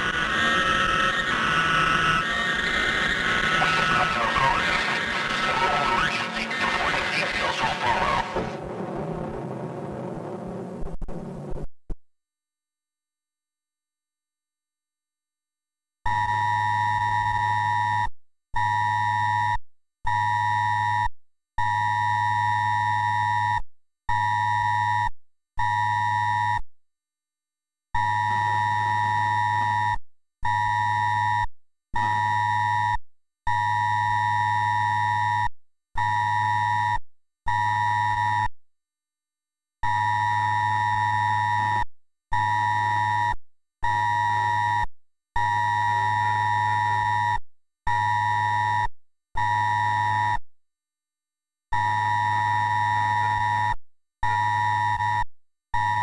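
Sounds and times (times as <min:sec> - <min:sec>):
buzzy electronic alert beeps: 0:00.0 - 0:08.7
low hum: 0:00.0 - 0:11.5.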